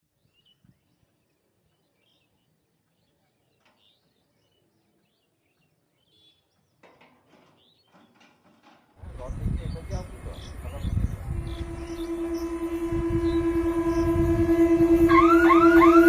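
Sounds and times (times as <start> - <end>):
birds chirping: 9.0 - 16.0.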